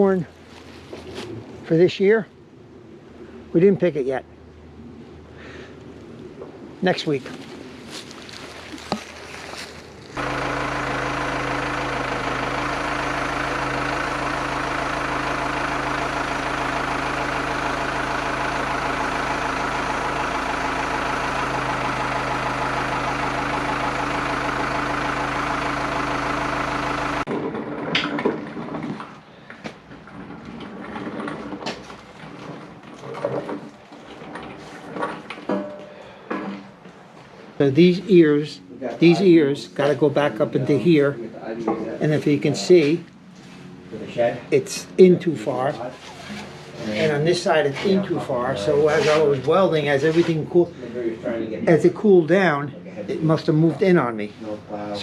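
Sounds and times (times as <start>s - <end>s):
engine idling: 7.4s - 34.8s
metal knocks and clanks: 30.1s - 36.7s.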